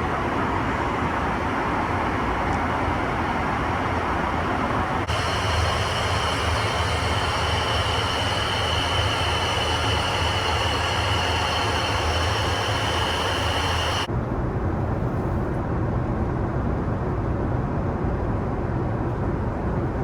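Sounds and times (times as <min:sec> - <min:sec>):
aircraft cabin hum and airflow: 0:00.0 - 0:14.1
steady high whine: 0:04.8 - 0:14.1.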